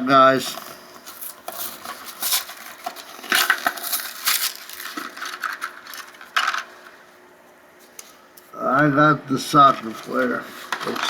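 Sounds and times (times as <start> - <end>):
cardboard tearing and rustling: 1.1 - 6.2.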